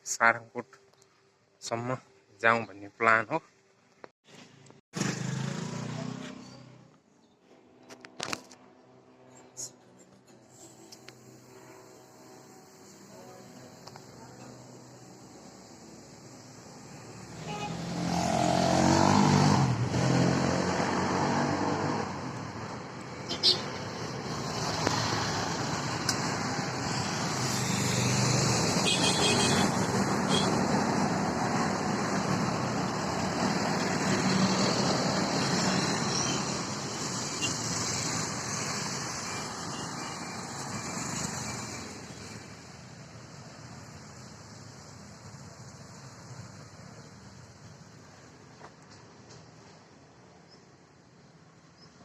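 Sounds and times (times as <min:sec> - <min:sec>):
road traffic noise: 0:04.0 - 0:52.0
vehicle passing close by: 0:05.0 - 0:06.8, 0:11.4 - 0:42.4.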